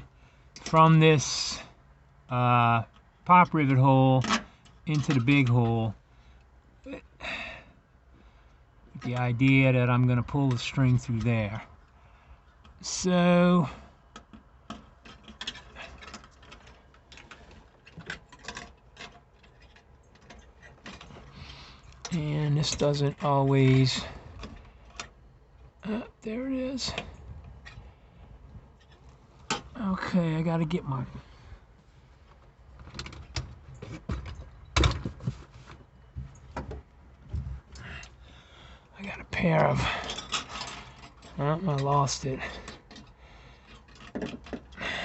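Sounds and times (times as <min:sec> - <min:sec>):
hand tools clicking and clunking: 0:02.9 - 0:05.8, 0:14.0 - 0:25.2, 0:32.3 - 0:38.7, 0:39.4 - 0:45.0.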